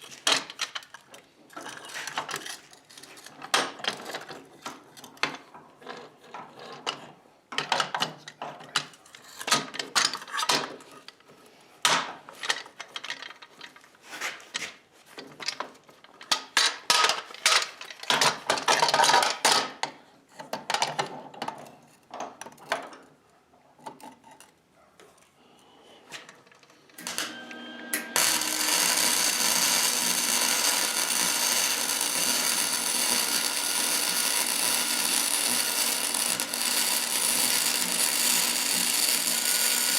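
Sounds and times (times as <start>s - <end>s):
power tool running: 27.0s - 39.9s.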